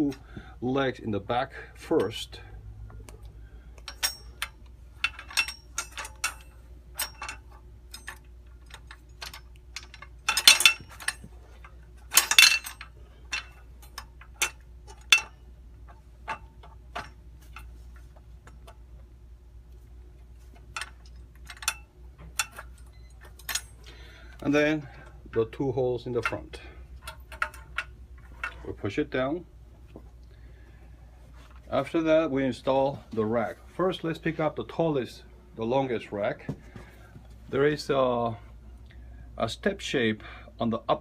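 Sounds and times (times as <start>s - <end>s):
metal rack parts clinking: 3.8s - 18.8s, 20.4s - 25.0s, 26.0s - 28.7s.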